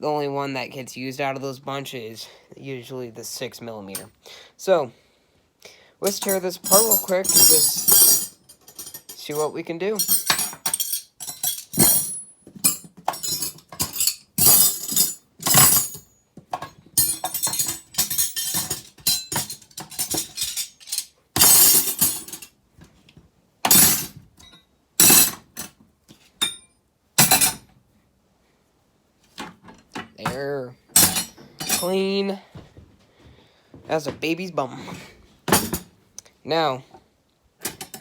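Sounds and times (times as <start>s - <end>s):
metal wrenches clanking: 6.0s - 22.6s, 23.6s - 26.6s, 27.2s - 27.7s, 29.4s - 32.2s, 37.6s - 38.0s.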